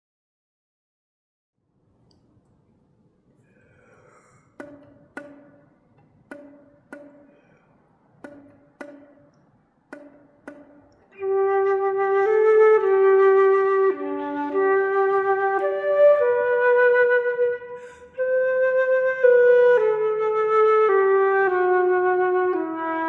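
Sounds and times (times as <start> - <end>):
flute key slaps: 4.6 - 11.8, 15.2 - 17.8
flute waltz melody: 11.1 - 23.0.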